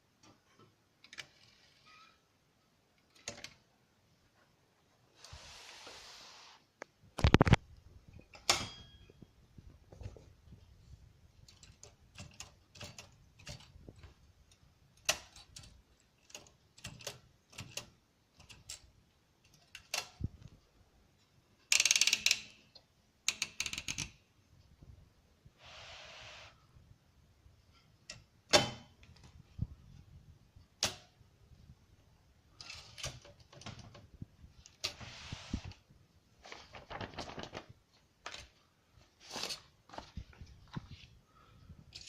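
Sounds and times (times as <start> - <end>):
typewriter keys clacking: 11.5 - 14.1.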